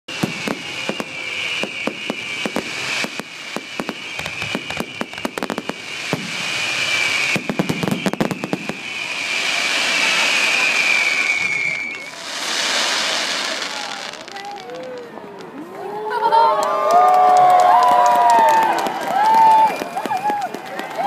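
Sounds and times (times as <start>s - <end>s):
high shrill whistle: 0.1s - 13.8s
rising hiss: 0.1s - 15.2s
firework bangs and cracks: 0.1s - 15.6s, 17.1s - 21.0s.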